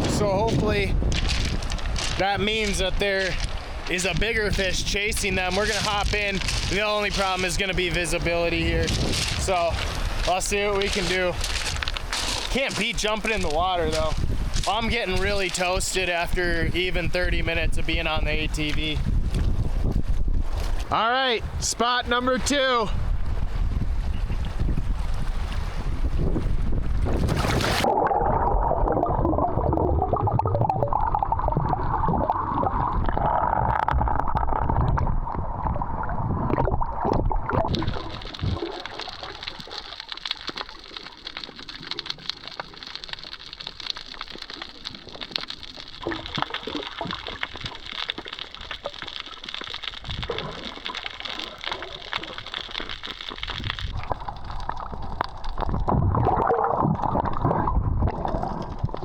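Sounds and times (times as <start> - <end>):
water sloshing underwater: 0.0 - 20.9, 24.1 - 59.0.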